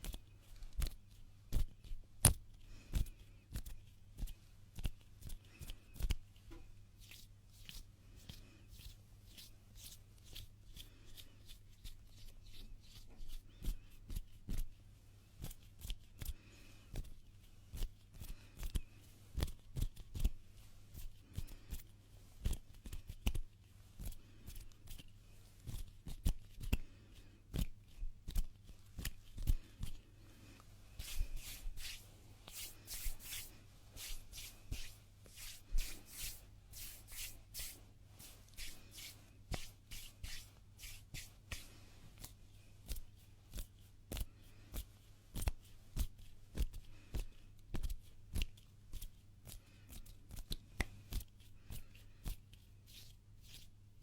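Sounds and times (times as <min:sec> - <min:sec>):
hands rubbing together: 0:30.8 - 0:43.0.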